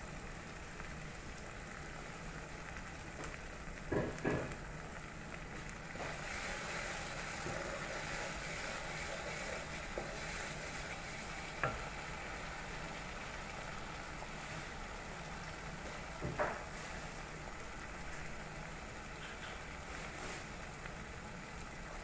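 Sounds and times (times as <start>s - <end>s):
paste sizzling in hot oil: 3.4s - 21.0s.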